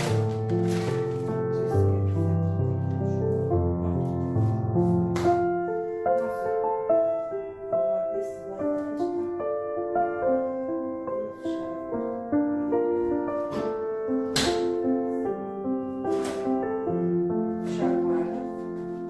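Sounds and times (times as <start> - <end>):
slow piano melody: 0.0 - 19.0.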